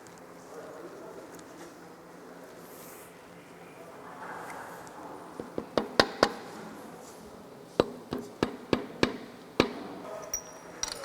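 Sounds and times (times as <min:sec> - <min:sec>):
metal clinks and knocks: 0:09.6 - 0:11.0.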